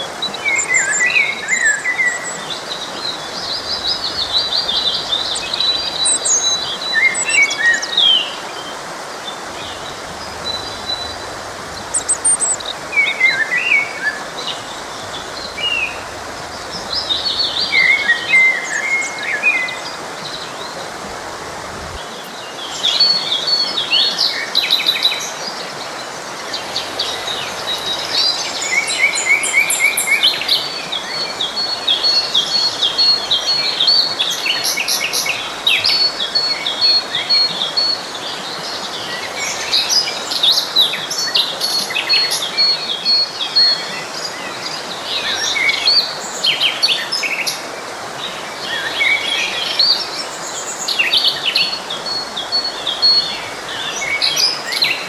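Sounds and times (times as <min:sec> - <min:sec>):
songbirds singing and chirping: 0:00.0 - 0:55.0
stream rushing: 0:00.0 - 0:55.0.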